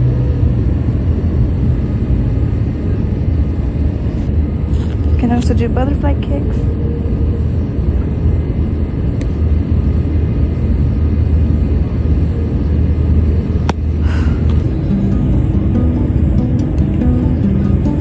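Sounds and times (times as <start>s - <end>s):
outdoor background rumble: 0.0s - 18.0s
music: 14.6s - 18.0s.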